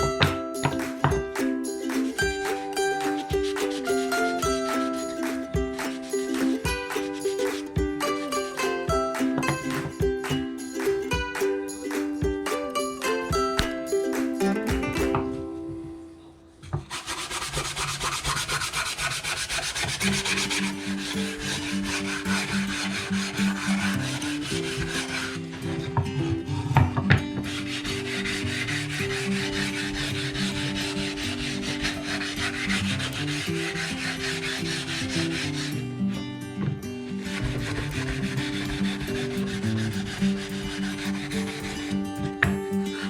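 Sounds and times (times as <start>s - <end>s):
background music melody: 0.0s - 16.9s, 19.4s - 43.0s
sandpaper rubbing on wood: 3.2s - 4.4s, 16.9s - 25.9s, 27.4s - 35.8s, 37.2s - 43.0s.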